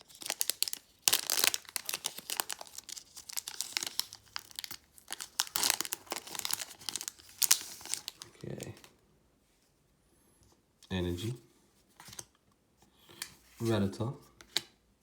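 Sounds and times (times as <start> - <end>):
foil wrapper tearing and crinkling: 0.0 - 8.8.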